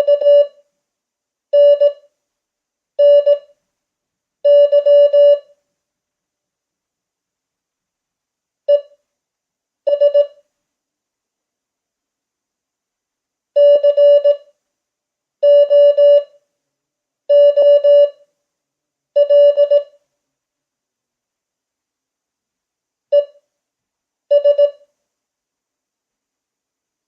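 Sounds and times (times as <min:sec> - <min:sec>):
morse code tone: 0:00.0 - 0:00.6, 0:01.6 - 0:02.0, 0:03.0 - 0:03.5, 0:04.5 - 0:05.4, 0:09.9 - 0:10.4, 0:13.6 - 0:14.4, 0:15.4 - 0:16.3, 0:17.3 - 0:18.2, 0:19.2 - 0:19.9, 0:24.3 - 0:24.8.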